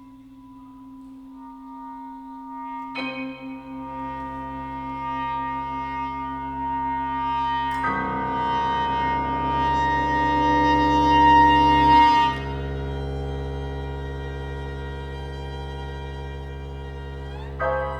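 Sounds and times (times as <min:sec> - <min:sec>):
chamber ensemble long held notes: 0:00.0 - 0:17.9.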